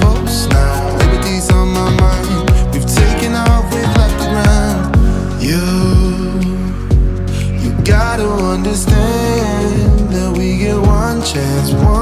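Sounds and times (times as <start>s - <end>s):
kick-drum beat: 0.0s - 5.2s, 5.8s - 6.3s, 6.9s - 7.2s, 7.8s - 8.2s, 8.9s - 9.2s, 9.8s - 10.2s, 10.9s - 11.2s
pop song with sung vocal: 0.0s - 12.0s.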